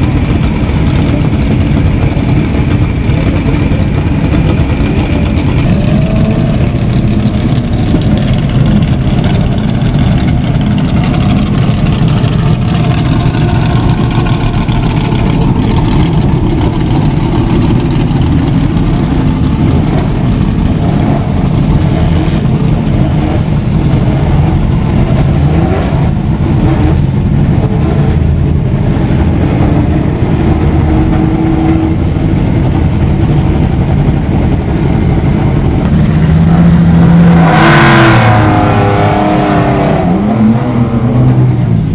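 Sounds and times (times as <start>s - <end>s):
racing car engines revving: 0.0s - 41.9s.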